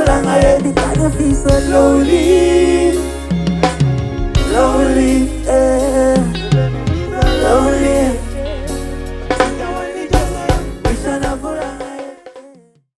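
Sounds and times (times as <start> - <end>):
bass guitar: 0.0 - 11.8
drums: 0.0 - 12.7
person singing wordless vocals: 0.0 - 12.9.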